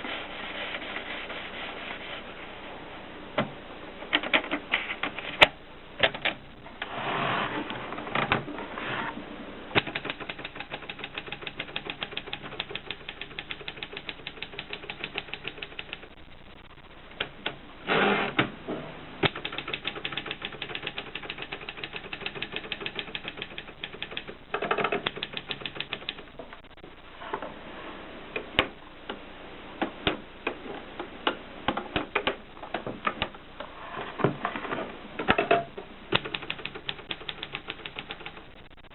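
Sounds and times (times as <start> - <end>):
manual typewriter typing: 9.8 - 16.1, 19.2 - 26.3, 36.1 - 38.6.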